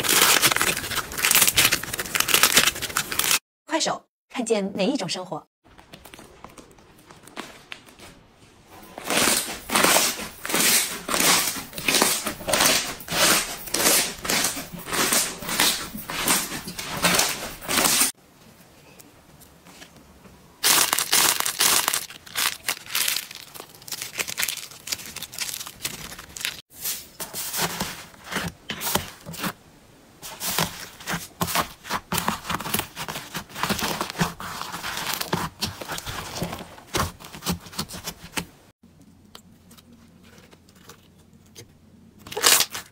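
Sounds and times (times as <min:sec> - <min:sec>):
slime crackling and popping: 0:20.6 - 0:26.6.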